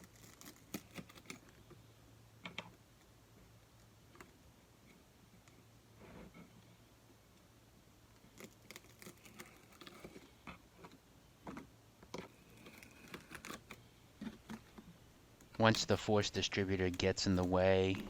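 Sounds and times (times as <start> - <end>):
knife scratching through rubber: 8.4 - 10.4, 12.2 - 14.9.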